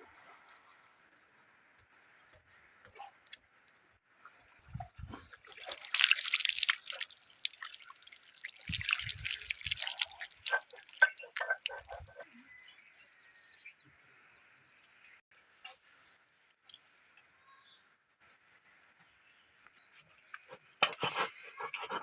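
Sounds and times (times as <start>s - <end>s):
quick water drips: 4.3s - 12.2s
water splashing: 4.6s - 12.2s.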